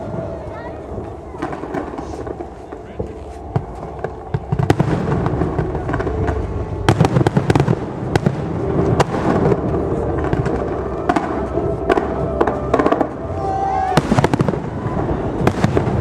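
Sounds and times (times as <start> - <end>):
fireworks bursting: 0.0 - 16.0
sharp firework bangs: 13.9 - 16.0.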